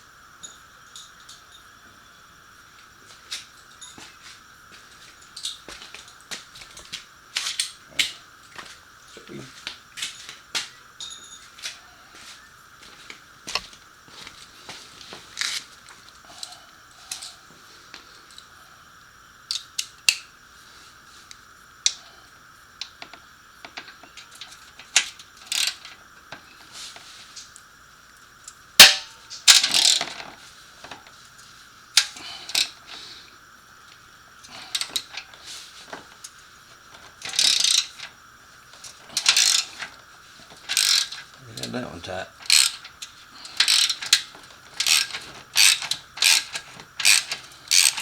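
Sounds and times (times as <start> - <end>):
metal tool clinks: 11.0 - 11.6
ratchet wrench clicking: 24.2 - 25.9, 28.8 - 30.2, 37.2 - 38.1, 38.8 - 39.9, 40.6 - 48.0
sharp metallic clank: 28.8 - 29.2.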